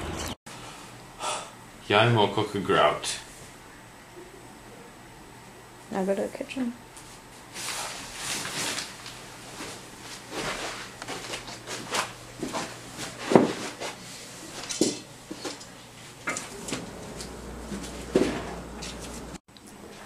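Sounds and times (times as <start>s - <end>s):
pots and utensils clattering: 14.5s - 15.7s.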